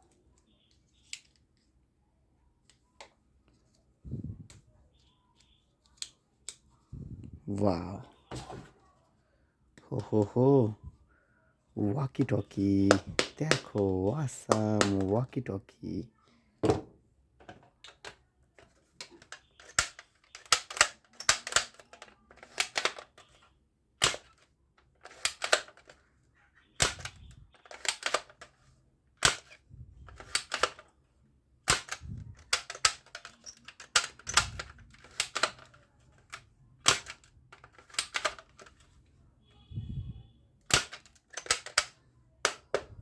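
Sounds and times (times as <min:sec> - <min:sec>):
plastic toys clicking: 0:12.0 - 0:16.0, 0:17.5 - 0:26.1, 0:26.8 - 0:31.0, 0:31.6 - 0:39.0, 0:40.6 - 0:43.0.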